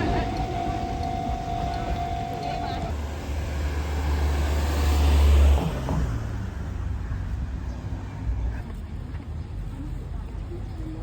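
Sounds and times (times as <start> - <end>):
vehicle passing by: 0.0 - 6.8.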